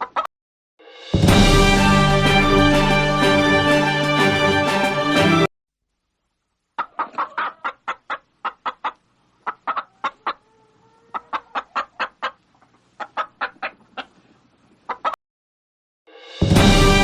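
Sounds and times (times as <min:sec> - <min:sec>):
hen clucking: 0:00.0 - 0:00.3, 0:06.8 - 0:15.2.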